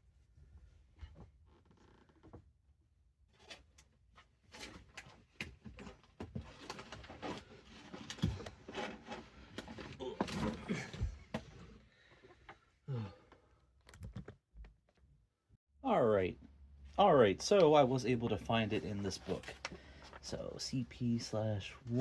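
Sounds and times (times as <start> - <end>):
rustling and handling noise: 3.4 - 12.6, 17.6 - 22.0.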